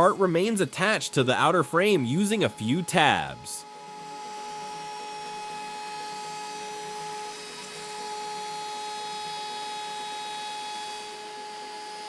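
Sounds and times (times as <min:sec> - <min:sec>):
router spindle whine: 0:03.6 - 0:12.0.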